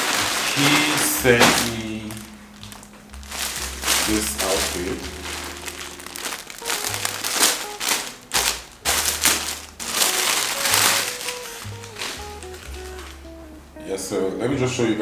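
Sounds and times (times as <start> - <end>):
packaging crinkling and rustling: 0.0 - 13.4
background music with bass line: 0.0 - 15.0.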